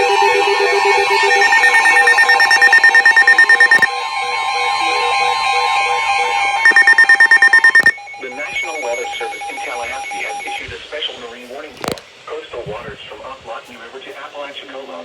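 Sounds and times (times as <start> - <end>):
steady alert tone: 0.0 - 3.9, 4.6 - 10.6
pulsing electronic alert buzz: 0.0 - 10.6.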